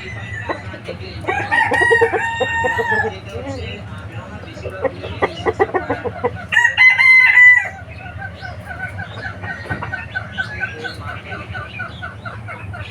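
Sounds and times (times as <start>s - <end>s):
rooster crowing: 0.0s - 3.4s, 6.4s - 8.0s
chickens clucking: 0.0s - 12.9s.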